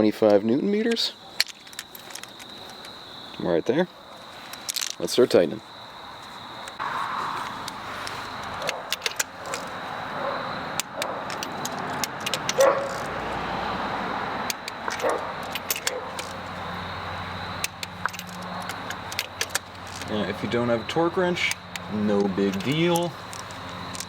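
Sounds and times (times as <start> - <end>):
metal tools clinking: 0.7 - 3.0, 4.4 - 5.4, 7.6 - 9.9, 10.8 - 13.1, 14.5 - 16.7, 17.6 - 24.0.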